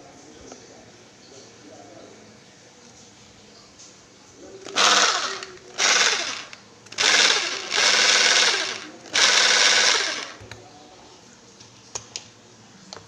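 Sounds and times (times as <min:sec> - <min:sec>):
rotary hammer drill running: 0:04.6 - 0:10.4.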